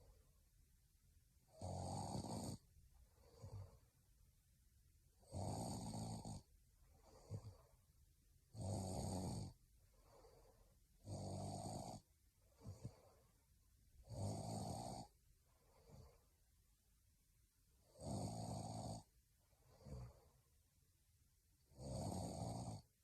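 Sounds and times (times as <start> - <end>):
quiet breaths: 0.0 - 23.0
woman snoring: 1.5 - 2.6, 3.2 - 3.8, 5.2 - 7.7, 8.5 - 12.0, 14.0 - 15.1, 17.8 - 19.1, 19.7 - 20.3, 21.7 - 22.9.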